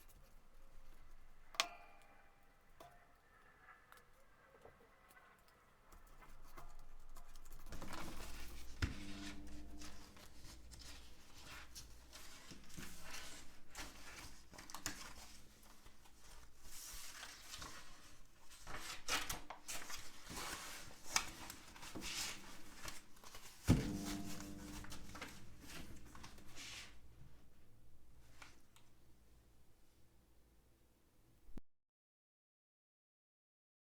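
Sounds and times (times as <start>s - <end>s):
sharp knocks: 23.7s - 26.8s.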